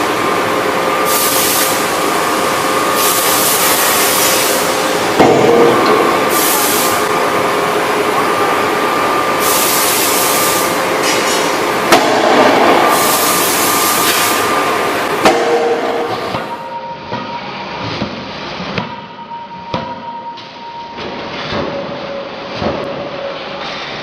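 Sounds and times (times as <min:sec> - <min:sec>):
machine hum: 0:00.0 - 0:24.0
forging hammer blows: 0:02.8 - 0:07.1, 0:11.0 - 0:20.0
loud hissing: 0:06.0 - 0:07.1, 0:09.3 - 0:15.2.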